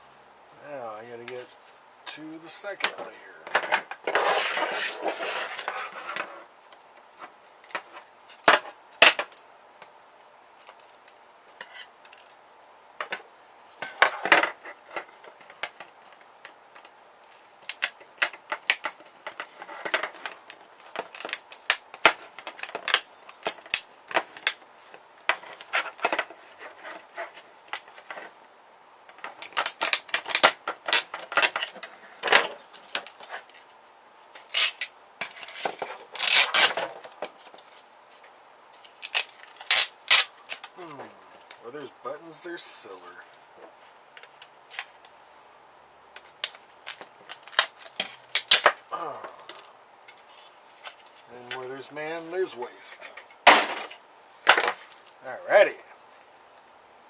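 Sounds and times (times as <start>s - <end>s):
plastic parts clicking and rattling: 29.1s - 33.6s.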